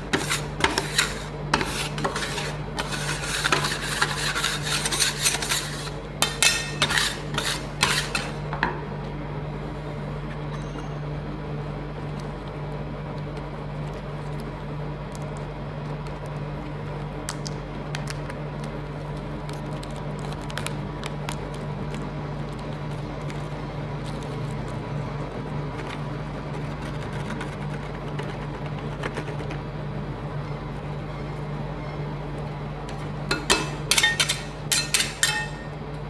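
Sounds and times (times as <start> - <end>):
metal spatulas scraping on plate: 0.0 - 8.5, 32.9 - 35.8
low machine hum: 0.0 - 36.0.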